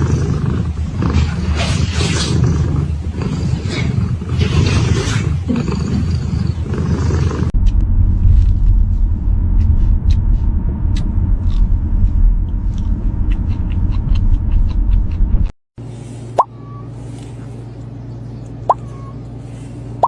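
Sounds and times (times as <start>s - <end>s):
loud low rumble: 7.4s - 20.0s.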